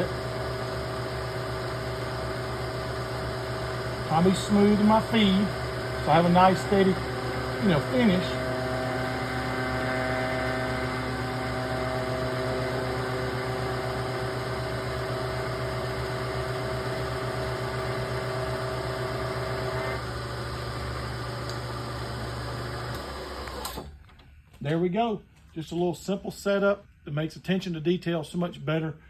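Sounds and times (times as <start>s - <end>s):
metal cutting whine: 0.0s - 20.2s
machine motor hum: 0.0s - 23.9s.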